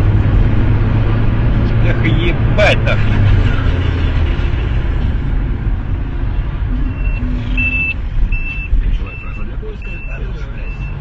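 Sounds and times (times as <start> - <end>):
car engine and road rumble: 0.0 - 11.0
high electronic beep: 6.7 - 11.0.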